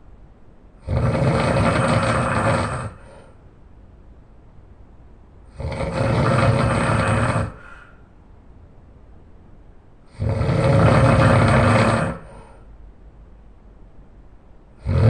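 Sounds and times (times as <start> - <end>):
person snoring loudly: 0.8 - 3.3, 5.5 - 8.0, 10.1 - 12.6, 14.8 - 15.0.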